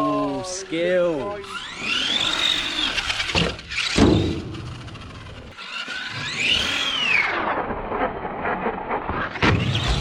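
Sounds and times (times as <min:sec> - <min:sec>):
electric motor whining: 0:00.0 - 0:07.6
thumps: 0:03.2 - 0:05.4.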